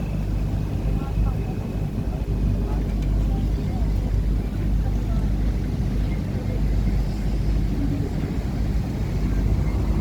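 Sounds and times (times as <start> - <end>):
boat engine rumble: 0.0 - 10.0.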